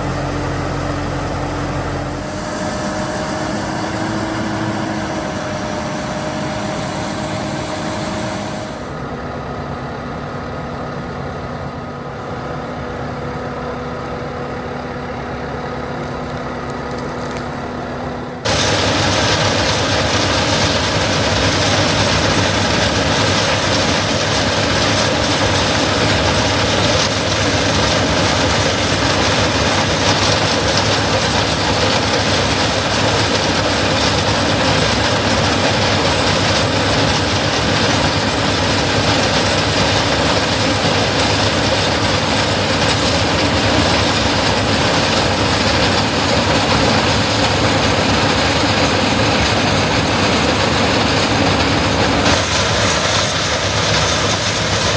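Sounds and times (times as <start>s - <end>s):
diesel engine drone: 0.0s - 54.9s
mechanical rushing rattle: 18.5s - 54.9s.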